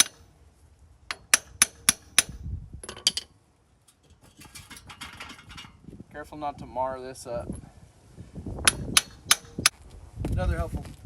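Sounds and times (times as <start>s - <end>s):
faint clattering: 2.8s - 5.8s.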